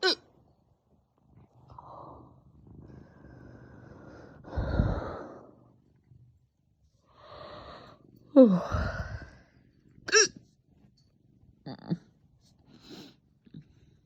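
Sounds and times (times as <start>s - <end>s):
person hiccuping: 0.0s - 0.2s, 10.1s - 10.4s.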